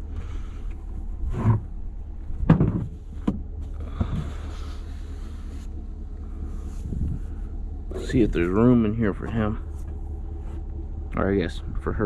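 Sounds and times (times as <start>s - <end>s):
low vehicle hum: 0.0s - 12.0s
handling knocks and rustles: 0.7s - 5.8s.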